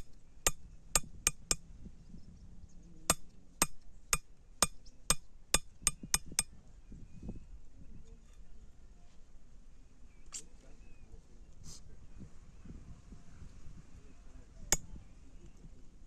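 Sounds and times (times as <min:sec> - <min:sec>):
hammer striking iron on anvil: 0:03.1 - 0:06.5.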